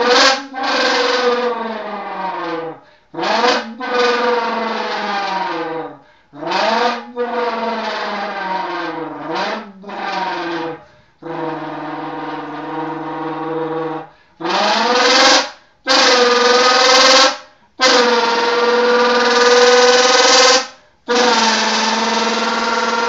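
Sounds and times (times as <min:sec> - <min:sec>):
person imitating engine revs: 0:00.0 - 0:23.0.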